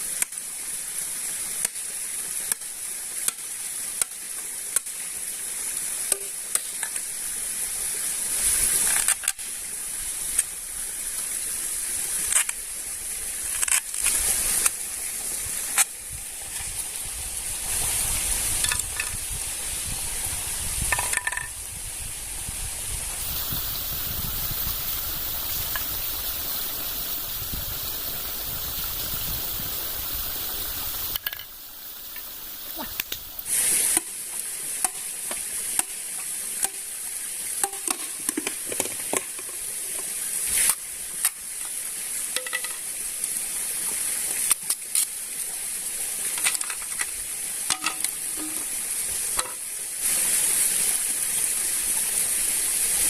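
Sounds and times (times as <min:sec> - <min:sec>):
food sizzling in a pan: 0:23.2 - 0:34.2.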